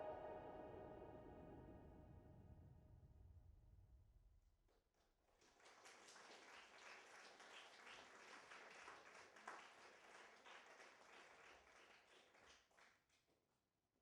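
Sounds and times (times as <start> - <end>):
faint audience applause: 5.3 - 13.2.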